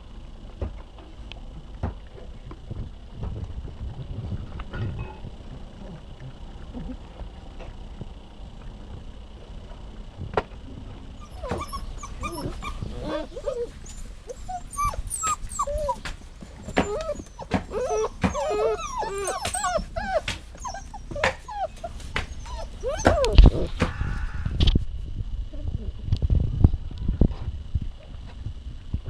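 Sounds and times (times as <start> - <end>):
dog whining: 11.2 - 23.8.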